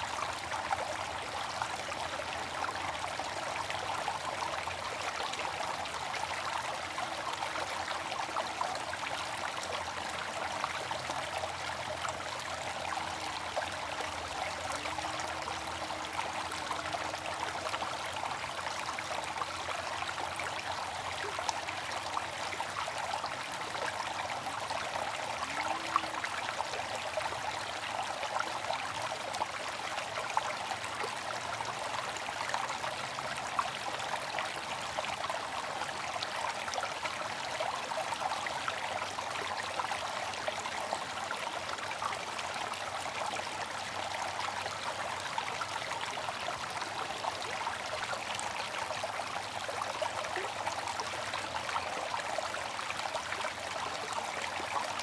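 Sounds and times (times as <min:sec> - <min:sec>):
water trickling into basin: 0:00.3 - 0:36.0.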